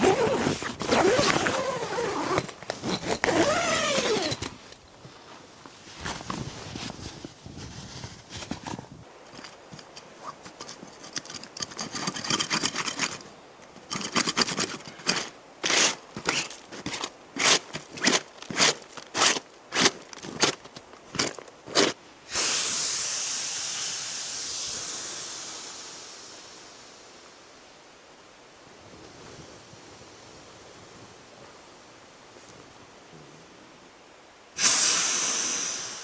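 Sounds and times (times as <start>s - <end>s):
footsteps crunching in snow: 0.0s - 8.8s, 15.2s - 22.0s
rushing hiss: 22.3s - 27.8s, 34.6s - 36.0s.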